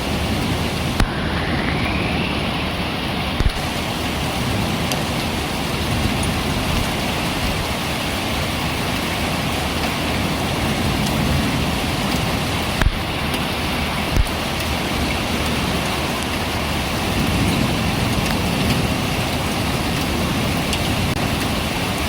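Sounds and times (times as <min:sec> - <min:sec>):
heavy rain pouring: 0:00.0 - 0:22.0
low rumble: 0:00.7 - 0:04.7.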